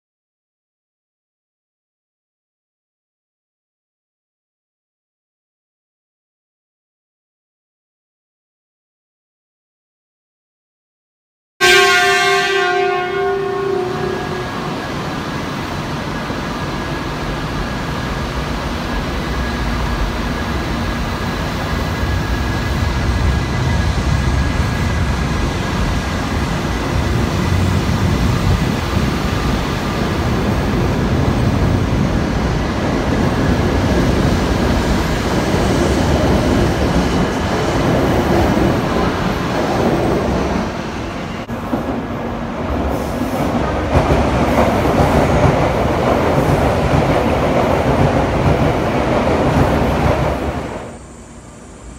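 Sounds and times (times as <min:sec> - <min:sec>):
train running through station: 0:11.6 - 0:51.9.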